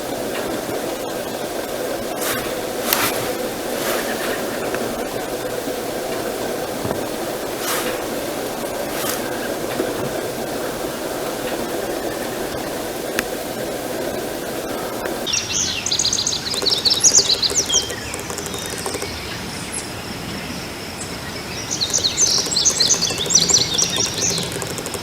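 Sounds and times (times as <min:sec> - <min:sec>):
steady low noise: 0:00.1 - 0:14.9.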